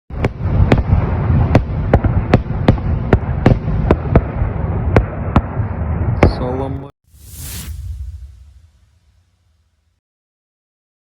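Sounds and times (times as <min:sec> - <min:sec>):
sharp explosive cracks: 0:00.1 - 0:05.7.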